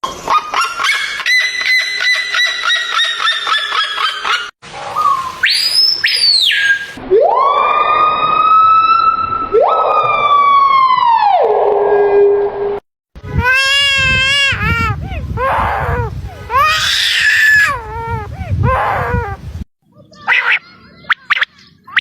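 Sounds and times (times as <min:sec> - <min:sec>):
bird calling sharp repeated notes: 0:00.9 - 0:07.0
bird siren-like wails: 0:04.9 - 0:12.4.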